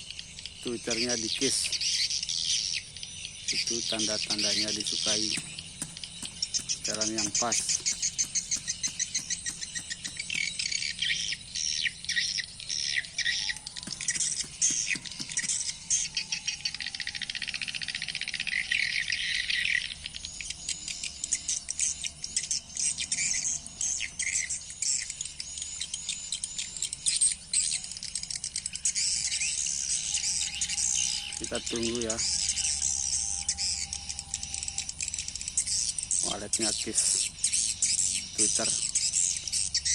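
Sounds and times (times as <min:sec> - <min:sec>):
swiftlets chirping: 0:03.4 - 0:11.4, 0:13.6 - 0:16.2
bird clicking: 0:03.6 - 0:10.9, 0:13.7 - 0:16.1.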